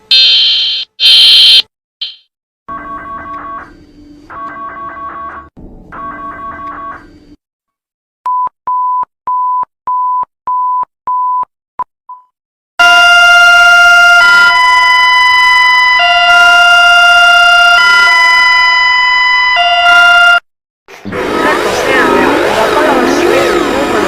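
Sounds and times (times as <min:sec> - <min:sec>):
harsh alternating alarm chords: 0:00.1 - 0:02.2
short high beeps: 0:00.1 - 0:02.2.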